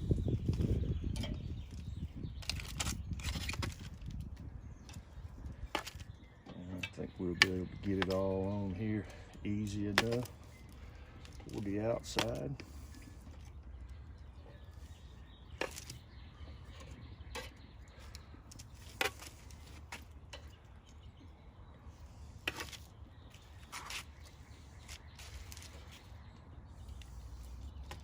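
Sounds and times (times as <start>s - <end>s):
steady low rumble: 0.0s - 5.8s.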